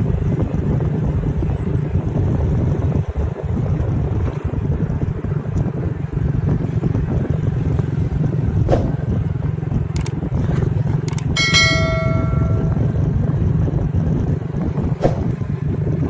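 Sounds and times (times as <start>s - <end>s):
wind rushing over microphone: 0.0s - 16.0s
bell-like ringing tone: 11.4s - 13.2s.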